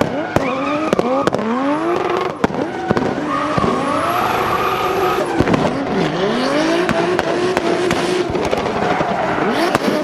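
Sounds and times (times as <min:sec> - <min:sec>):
exhaust pops and bangs: 0:00.0 - 0:04.0, 0:05.3 - 0:05.9, 0:06.8 - 0:10.0
car engine revving hard: 0:00.0 - 0:10.0.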